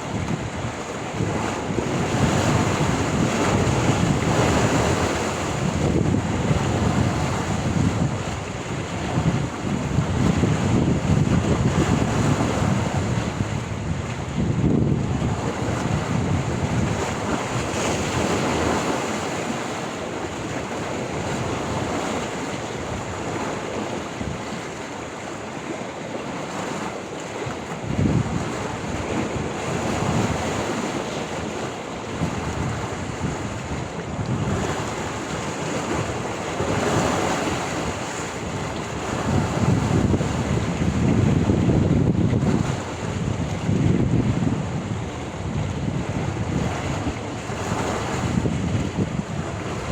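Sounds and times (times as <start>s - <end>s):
wind buffeting microphone: 0.0s - 25.8s, 26.4s - 49.9s
sea waves breaking on shore: 0.0s - 49.9s.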